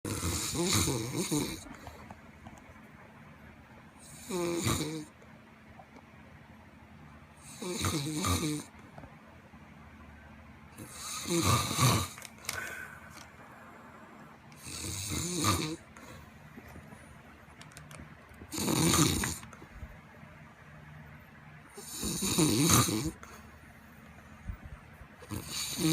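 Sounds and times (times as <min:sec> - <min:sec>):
person snoring heavily: 0:00.1 - 0:01.9, 0:04.0 - 0:05.1, 0:07.4 - 0:08.7, 0:10.8 - 0:13.0, 0:14.6 - 0:16.2, 0:18.5 - 0:19.4, 0:21.8 - 0:23.3, 0:25.3 - 0:25.9
quiet breaths: 0:00.1 - 0:02.5, 0:10.8 - 0:17.5, 0:23.1 - 0:25.9.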